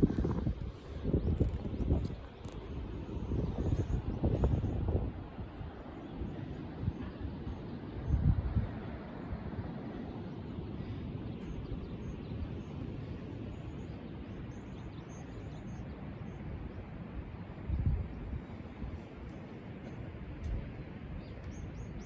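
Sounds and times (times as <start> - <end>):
wind: 0.0 - 22.0.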